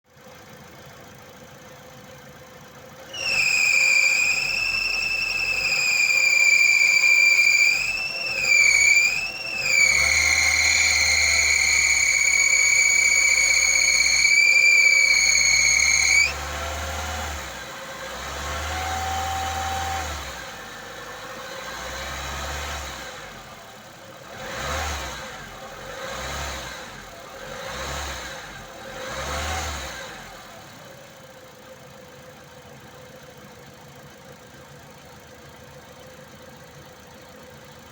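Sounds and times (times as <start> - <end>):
car engine idling: 0.1 - 16.4, 30.6 - 37.9
high whistle under hood: 3.1 - 16.4
car engine revving: 3.2 - 23.5, 24.2 - 30.6.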